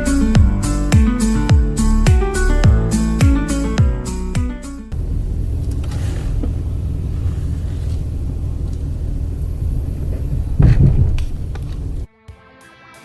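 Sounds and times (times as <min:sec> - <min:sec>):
pickup truck engine rumbling: 0:04.1 - 0:12.1.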